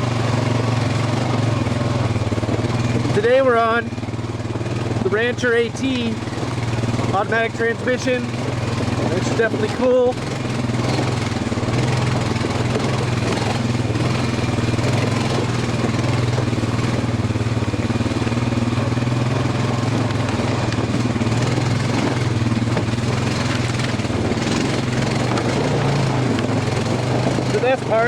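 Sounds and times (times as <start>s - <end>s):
atv engine running: 0.0s - 28.0s
terrain noise: 0.2s - 28.0s
wind noise: 20.4s - 27.6s.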